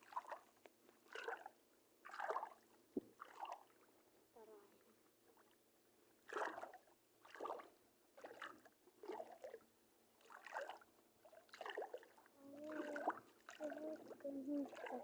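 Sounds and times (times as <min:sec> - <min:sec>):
water splashing: 0:11.5 - 0:15.0.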